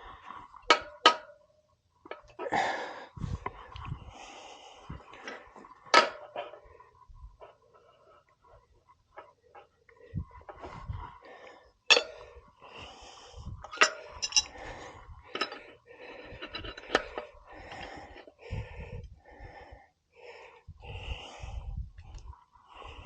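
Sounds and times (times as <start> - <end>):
person straining breaths: 2.2 - 5.6, 9.2 - 23.0
metal tool clinking on rim: 11.9 - 12.2, 13.7 - 14.5, 15.4 - 15.6.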